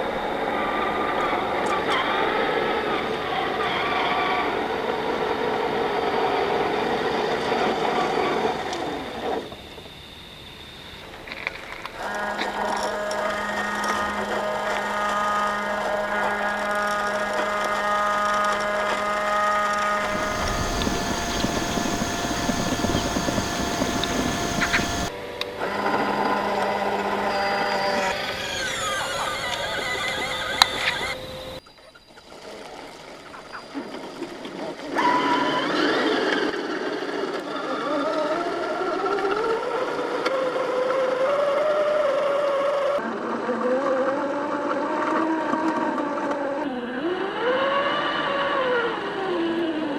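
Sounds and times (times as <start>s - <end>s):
electric motor whining: 8.4s - 25.2s
rough rumble with ticks: 20.0s - 25.1s.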